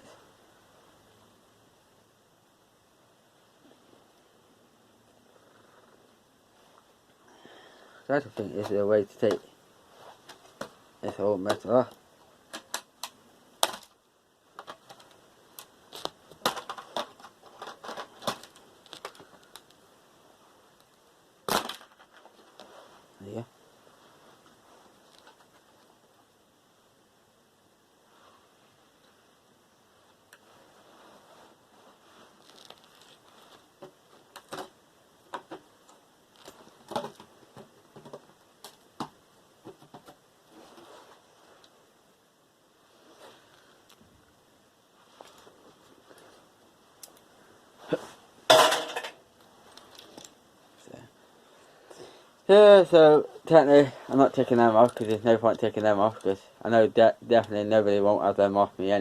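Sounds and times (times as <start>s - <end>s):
snapping parts: 12.5s - 19.8s, 20.8s - 22.7s.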